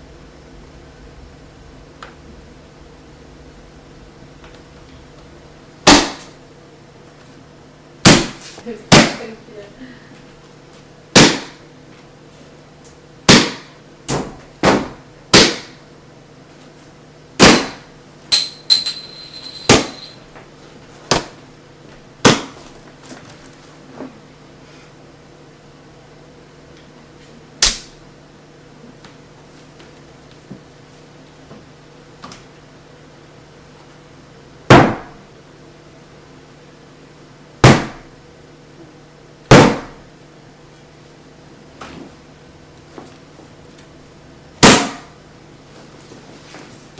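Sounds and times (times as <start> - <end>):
faint low hum: 0.0 - 46.9
sharp bangs: 5.8 - 6.4, 8.0 - 9.2, 11.1 - 11.6, 13.3 - 15.8, 17.4 - 20.2, 44.6 - 45.1
high ringing tone: 18.3 - 20.3.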